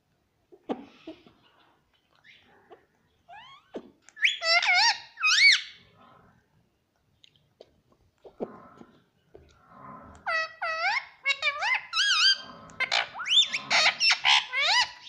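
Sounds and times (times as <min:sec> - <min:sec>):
parrot shrill squeaky calls: 0:03.3 - 0:05.8, 0:10.3 - 0:15.0.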